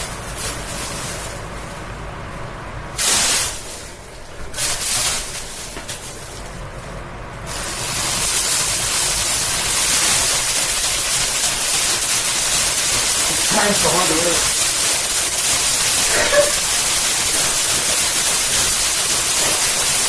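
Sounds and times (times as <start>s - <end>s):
plastic bag rustling: 0.0s - 1.8s, 3.4s - 6.9s
fan blades shredding bag: 0.0s - 20.0s.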